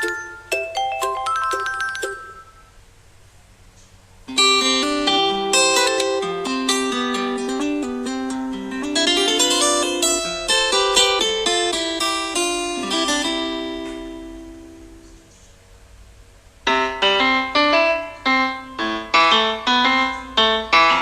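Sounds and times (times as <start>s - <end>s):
bright piano-like ringtone: 0.0s - 2.8s, 4.4s - 11.2s, 16.7s - 21.0s
plucked ringtone melody: 0.0s - 2.8s, 4.4s - 14.3s.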